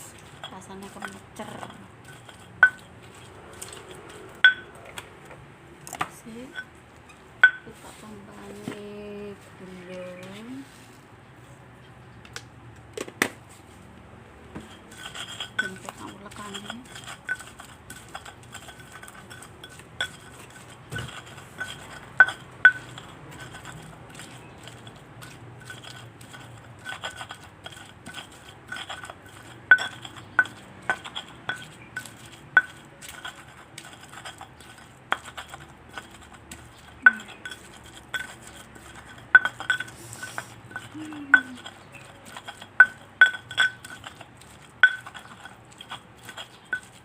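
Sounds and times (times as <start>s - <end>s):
utensil clinking against stone mortar: 0.0s - 5.1s, 7.4s - 7.8s, 14.6s - 47.0s.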